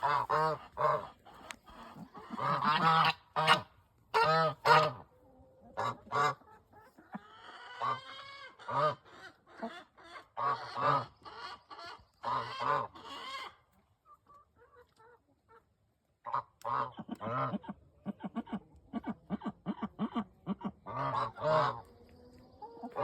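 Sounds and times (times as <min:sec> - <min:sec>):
hens honking calls: 0:00.0 - 0:05.0.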